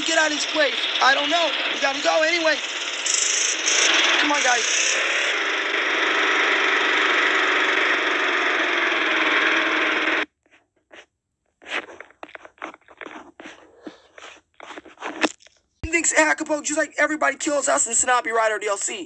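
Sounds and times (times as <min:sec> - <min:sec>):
vehicle engine running: 0:00.0 - 0:10.2.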